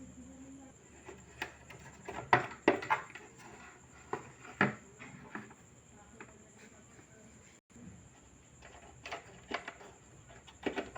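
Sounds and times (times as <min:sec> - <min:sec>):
hard objects knocking and clicking: 0:01.0 - 0:06.4, 0:08.6 - 0:10.9.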